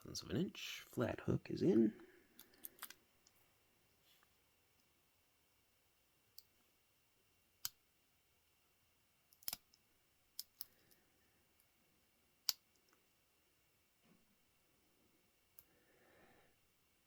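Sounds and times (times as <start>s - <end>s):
padlock picking metallic clicks: 9.3s - 9.8s, 10.4s - 10.9s.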